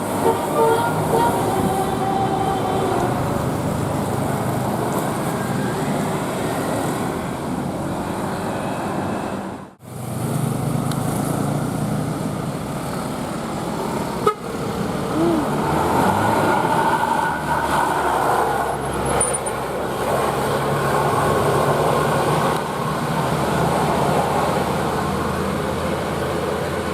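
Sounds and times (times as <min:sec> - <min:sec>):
bus horn tune: 0:00.0 - 0:03.1, 0:14.2 - 0:14.6
traffic engine and tyre noise: 0:00.0 - 0:26.9.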